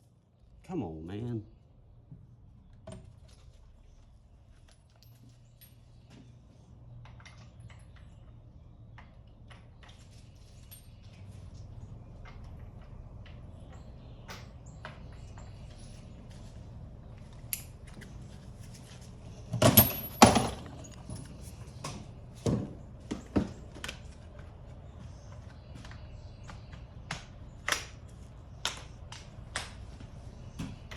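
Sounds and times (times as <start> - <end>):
hand tools clinking on metal: 19.6 - 21.4.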